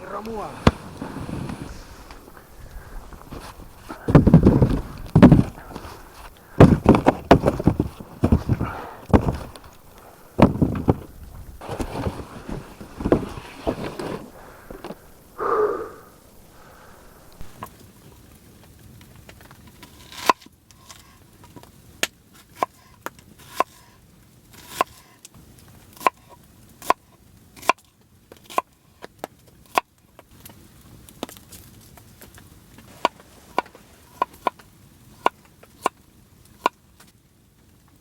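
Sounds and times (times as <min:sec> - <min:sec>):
wood being chopped: 0:00.1 - 0:17.6.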